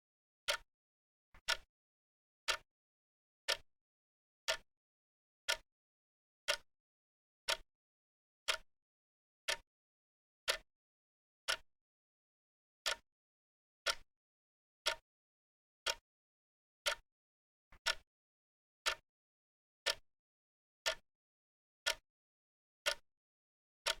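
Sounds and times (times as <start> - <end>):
clock ticking: 1.4 - 1.6, 10.5 - 10.7, 14.8 - 15.0, 15.8 - 16.0, 16.8 - 17.0, 17.8 - 18.0, 18.8 - 19.0, 20.8 - 21.0.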